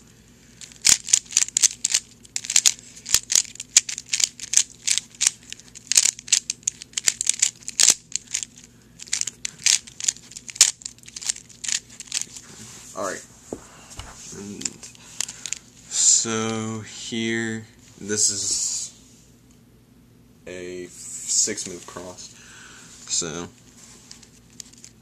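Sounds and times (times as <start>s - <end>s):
puzzle cube clicking as turned: 0.6s - 12.3s.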